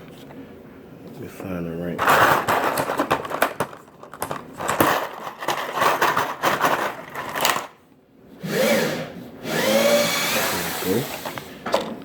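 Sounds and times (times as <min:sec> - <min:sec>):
plastic connectors rattling: 0:02.0 - 0:07.8.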